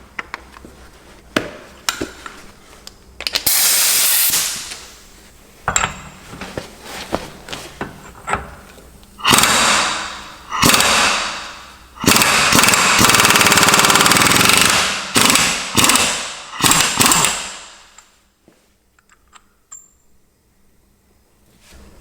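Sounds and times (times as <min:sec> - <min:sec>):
impact wrench hammering: 0:09.2 - 0:17.9.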